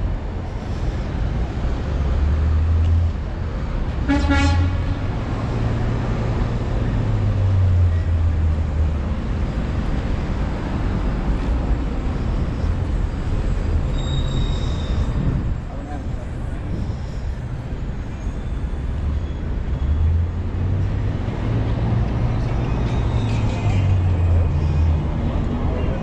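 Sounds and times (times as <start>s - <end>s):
city traffic rumbling: 0.0s - 26.0s
car horn toot: 4.1s - 4.9s.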